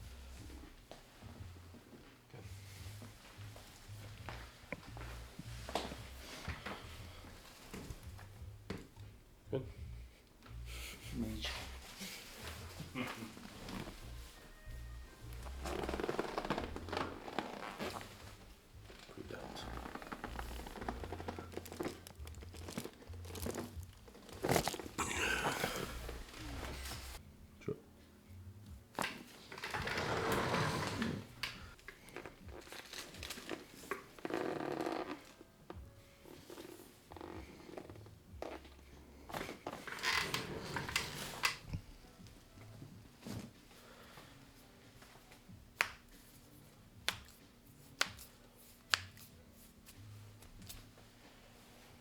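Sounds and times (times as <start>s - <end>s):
body rustling on treatment table: 0.4s - 8.4s, 11.4s - 27.2s.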